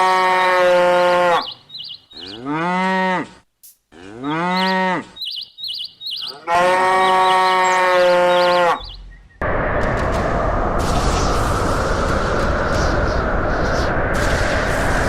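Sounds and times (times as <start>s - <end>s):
cows mooing: 0.0s - 1.6s, 2.2s - 5.2s, 6.2s - 9.0s
small bird chirps: 1.4s - 2.4s, 4.5s - 6.4s, 7.0s - 9.4s.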